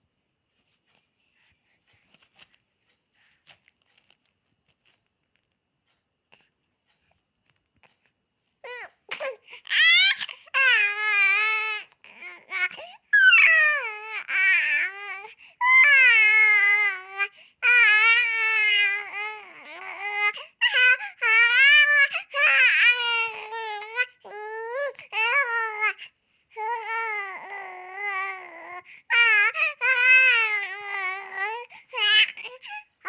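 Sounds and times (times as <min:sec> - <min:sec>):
baby crying: 0:08.7 - 0:26.0, 0:26.6 - 0:32.9.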